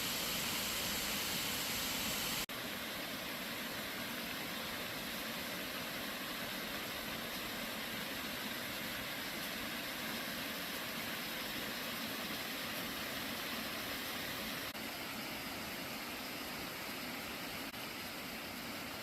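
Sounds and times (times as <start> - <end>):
waterfall rushing: 0.0 - 2.5.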